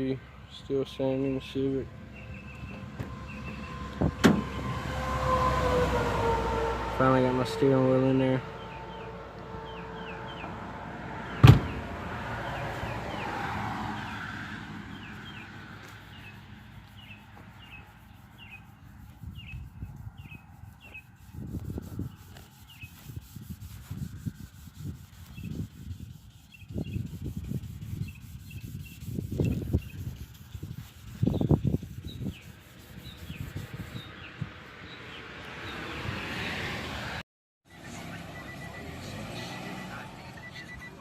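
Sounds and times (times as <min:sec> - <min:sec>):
sandpaper rubbing on paint: 0:14.9 - 0:34.4.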